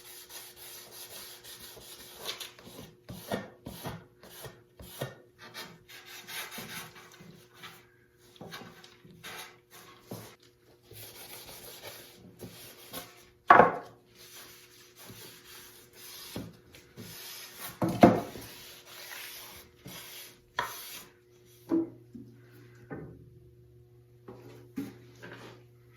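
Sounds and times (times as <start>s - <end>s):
sandpaper scraping wood: 0.0s - 7.1s, 14.2s - 16.4s, 17.0s - 21.1s.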